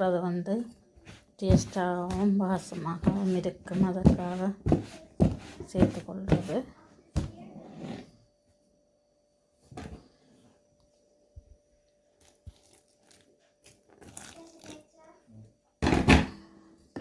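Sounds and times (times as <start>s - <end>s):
kitchen rustle: 0.0s - 8.2s, 9.6s - 10.6s
faint steady hum: 0.0s - 17.0s.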